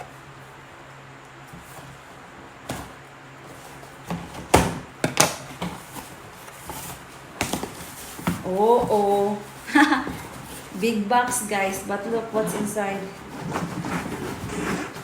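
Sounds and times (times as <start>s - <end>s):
cardboard box knocks and scrapes: 13.0s - 15.0s.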